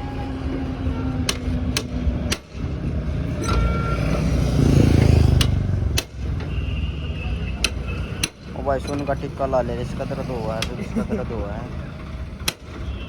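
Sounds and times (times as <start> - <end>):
vehicle engine passing by: 0.0 - 6.0.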